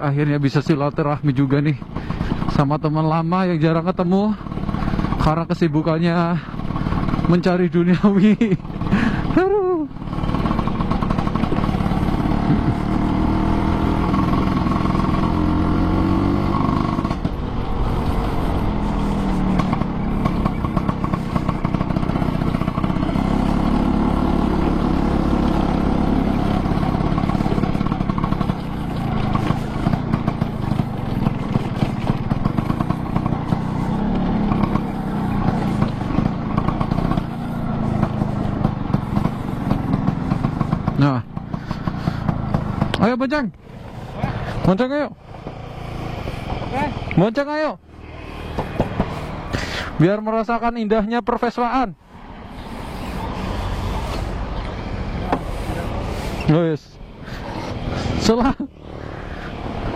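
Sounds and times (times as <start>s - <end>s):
scooter engine running: 0.0s - 59.9s
sharp short knocks: 48.5s - 49.1s.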